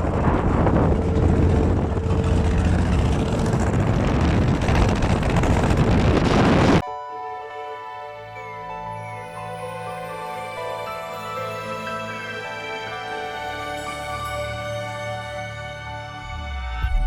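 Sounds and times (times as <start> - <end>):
combine harvester engine rumble: 0.0 - 6.8
music: 6.8 - 17.0.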